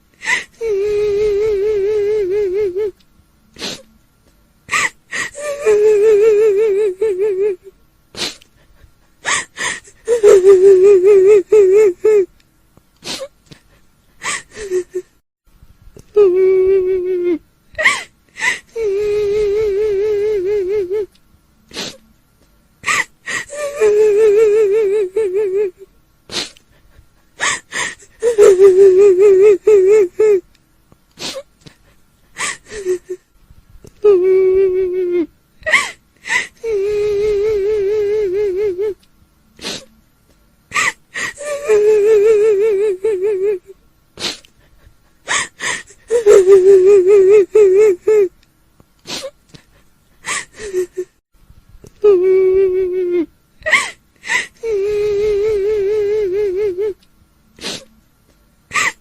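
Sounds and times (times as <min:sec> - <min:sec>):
woman wailing: 0:04.7 - 0:07.6, 0:10.1 - 0:12.3, 0:22.8 - 0:25.8, 0:40.7 - 0:43.6, 0:46.1 - 0:48.3
sharp gasping breaths: 0:08.2 - 0:10.1, 0:26.3 - 0:28.2, 0:44.2 - 0:46.1, 0:49.0 - 0:51.1, 0:57.6 - 0:57.9.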